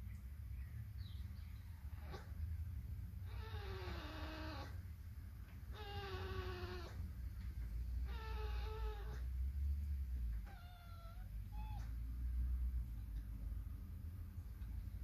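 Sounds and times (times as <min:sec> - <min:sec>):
fawn snoring: 0:03.3 - 0:04.8.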